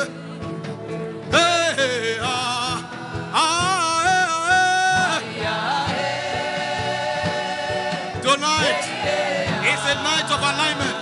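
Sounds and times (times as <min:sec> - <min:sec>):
person singing with vibrato: 0:00.0 - 0:00.7, 0:01.3 - 0:11.0
steady beat: 0:02.2 - 0:11.0.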